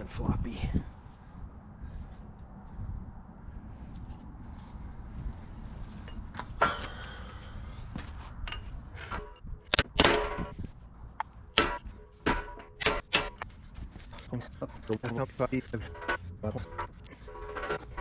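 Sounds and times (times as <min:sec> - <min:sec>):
hammer striking metal: 0:11.6 - 0:13.5.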